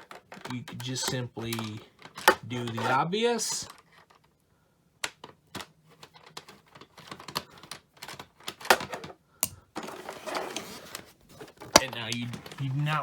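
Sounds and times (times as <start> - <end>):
plastic clicks and knocks: 0.0 - 2.8, 5.0 - 9.9, 10.5 - 13.0.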